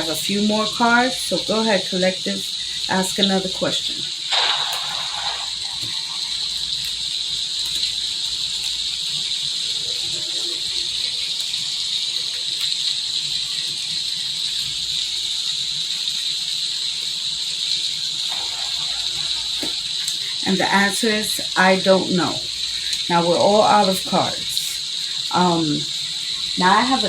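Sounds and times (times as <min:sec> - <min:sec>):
steady rain falling: 0:00.0 - 0:27.0
crickets chirring: 0:24.2 - 0:27.0.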